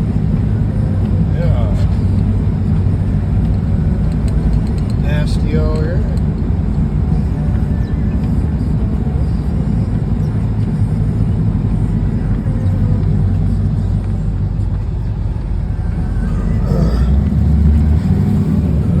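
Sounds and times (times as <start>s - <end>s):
road noise: 0.0s - 19.0s
vehicle engine drone: 0.0s - 19.0s.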